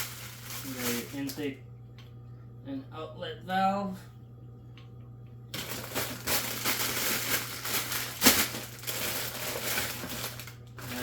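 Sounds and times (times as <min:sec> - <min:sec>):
packaging crinkling: 0:00.0 - 0:01.4, 0:05.5 - 0:11.0.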